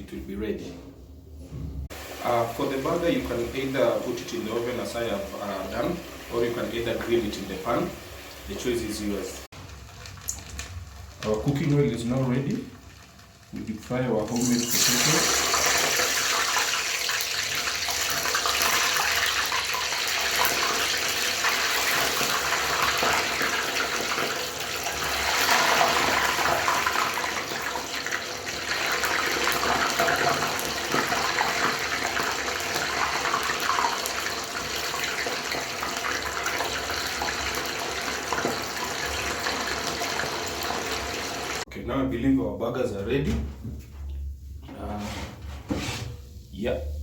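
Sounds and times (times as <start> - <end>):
fries sizzling in hot oil: 1.9 - 41.7.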